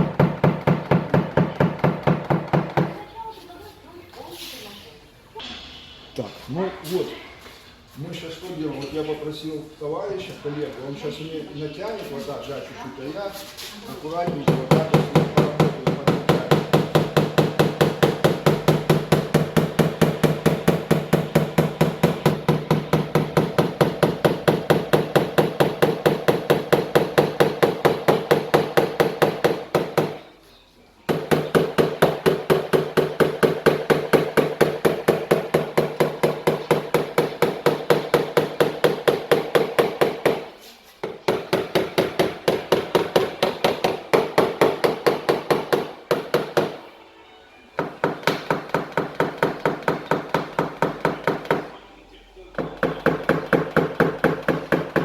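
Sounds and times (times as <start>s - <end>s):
hammer tapping on sheet metal: 0.0s - 3.0s, 14.2s - 30.3s, 31.1s - 46.8s, 47.8s - 51.7s, 52.5s - 55.0s.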